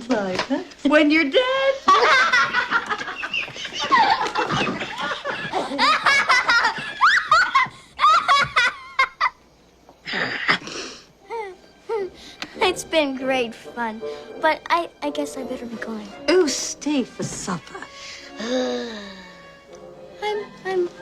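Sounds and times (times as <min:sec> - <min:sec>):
women cackling with laughter: 0:01.8 - 0:09.4.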